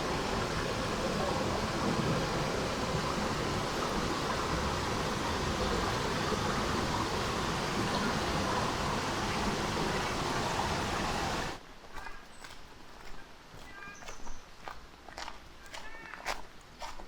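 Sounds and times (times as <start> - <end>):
mountain stream rushing: 0.0 - 11.6.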